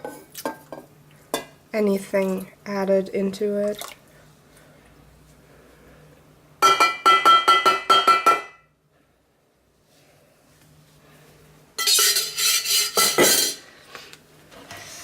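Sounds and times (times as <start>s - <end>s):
utensil clinking against container: 11.8s - 13.6s
utensil scraping container: 11.8s - 13.6s.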